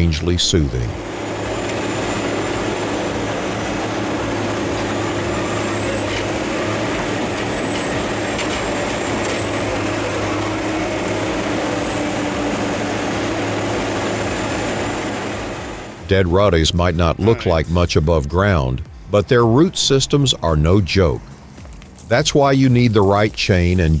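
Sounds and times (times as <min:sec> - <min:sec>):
wood-processing machine growling: 0:00.0 - 0:17.2
thin high whine: 0:00.0 - 0:24.0.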